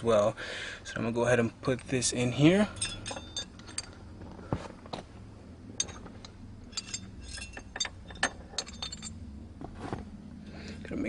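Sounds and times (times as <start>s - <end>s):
small metallic clicks and clinks: 2.7s - 4.0s, 5.8s - 9.2s.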